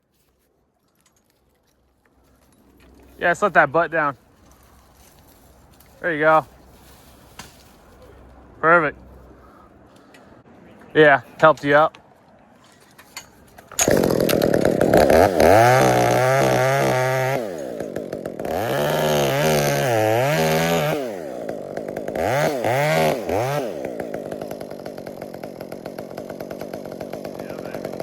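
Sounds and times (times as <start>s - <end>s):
chainsaw running: 13.2s - 28.0s.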